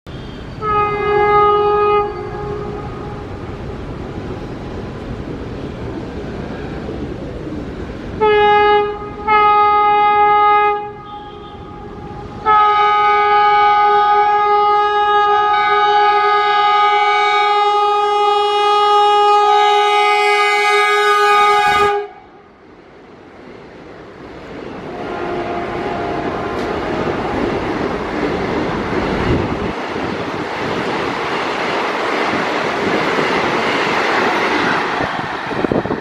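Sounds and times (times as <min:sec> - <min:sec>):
train horn blasts: 0:00.1 - 0:03.3, 0:08.2 - 0:22.5, 0:24.9 - 0:27.4
train running noise: 0:00.1 - 0:36.0.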